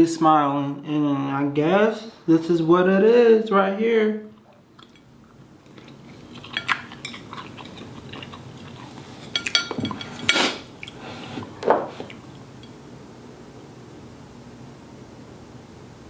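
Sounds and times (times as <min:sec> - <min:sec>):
utensil clinking against dish: 0:05.7 - 0:12.8.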